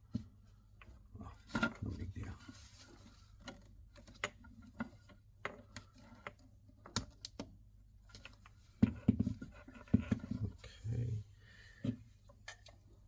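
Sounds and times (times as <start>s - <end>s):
small clicks and taps of wires: 3.4s - 9.0s.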